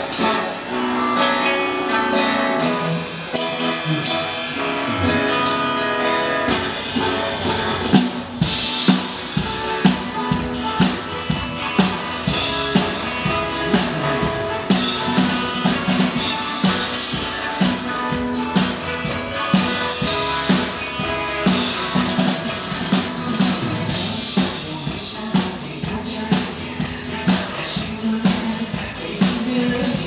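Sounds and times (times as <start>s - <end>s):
drum kit playing: 0.0s - 30.0s
recorded pop song: 0.0s - 30.0s.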